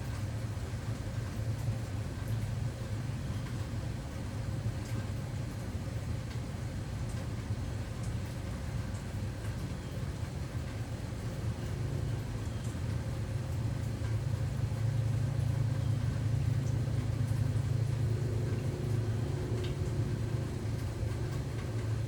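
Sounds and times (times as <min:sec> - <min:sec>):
steady low rumble: 0:10.6 - 0:22.0.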